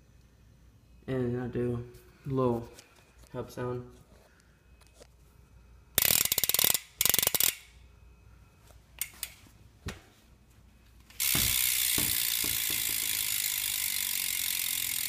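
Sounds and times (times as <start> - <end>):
bicycle hub ratcheting clicks: 6.0 - 7.8, 9.0 - 9.4, 11.1 - 15.0.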